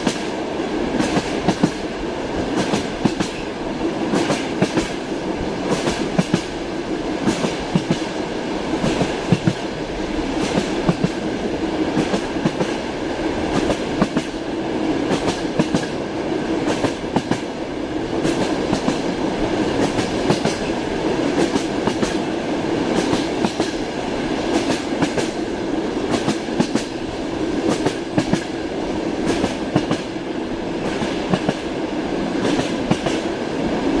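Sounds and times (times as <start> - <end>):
train wheels clicking over rail joints: 0.0 - 3.5, 4.1 - 6.6, 7.2 - 9.7, 10.3 - 11.3, 11.9 - 12.8, 13.4 - 14.4, 15.0 - 16.0, 16.6 - 17.5, 18.1 - 25.4, 26.0 - 27.0, 27.6 - 28.6, 29.2 - 30.2, 30.8 - 31.7, 32.4 - 33.3
low train rumble: 0.0 - 34.0.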